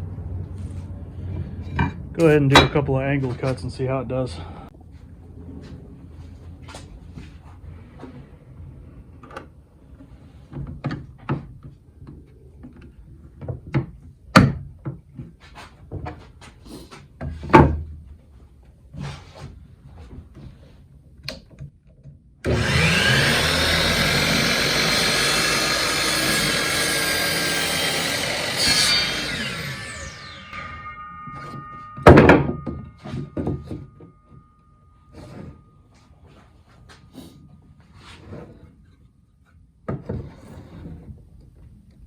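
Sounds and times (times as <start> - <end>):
miter saw motor cutting wood: 22.5 - 31.6.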